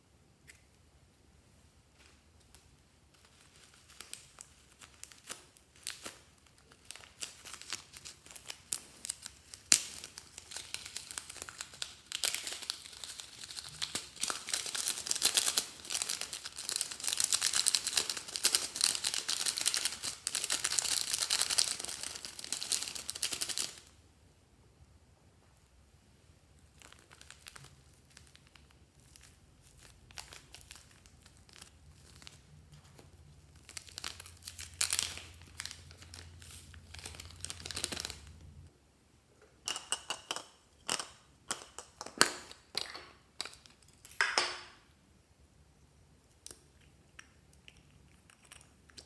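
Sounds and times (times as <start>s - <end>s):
slime squished and crackling: 3.3s - 23.9s, 26.6s - 38.3s.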